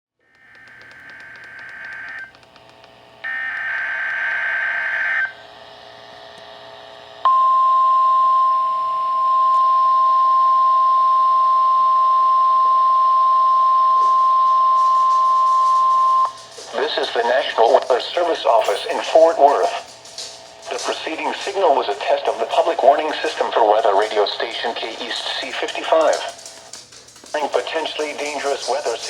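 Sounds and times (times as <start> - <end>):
steady warning alarm tone: 0.3 - 5.4, 7.3 - 29.0
raspy digital data bursts: 14.1 - 29.0.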